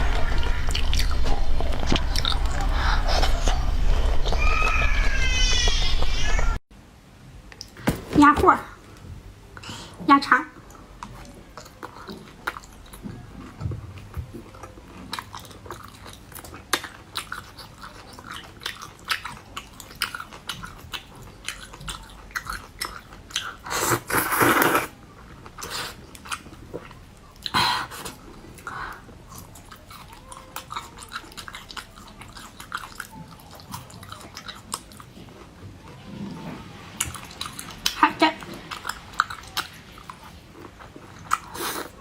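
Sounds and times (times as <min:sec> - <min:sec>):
person chewing food: 0:00.0 - 0:06.2, 0:10.6 - 0:42.0
rush of noise: 0:00.0 - 0:06.6.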